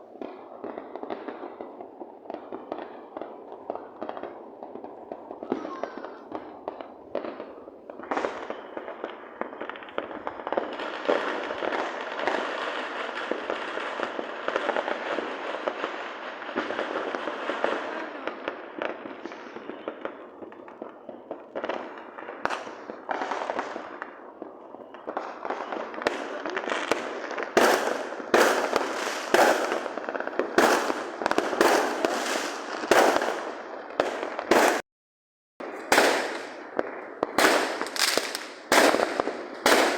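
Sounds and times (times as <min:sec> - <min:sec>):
fireworks crackling: 0:00.0 - 0:34.8, 0:35.6 - 0:39.9
fireworks sharp bangs: 0:00.0 - 0:34.8, 0:35.6 - 0:39.9.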